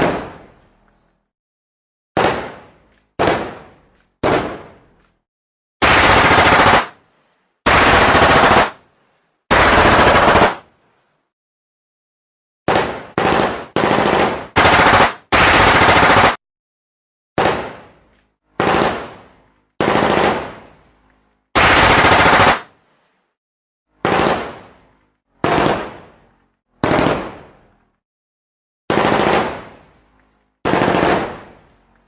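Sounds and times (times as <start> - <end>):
automatic gunfire bursts: 5.8 - 7.0, 7.7 - 8.8, 9.5 - 10.6, 12.7 - 16.4, 18.6 - 19.1, 19.8 - 20.5, 21.6 - 22.7, 24.0 - 24.5, 26.8 - 27.4, 28.9 - 29.7, 30.6 - 31.5.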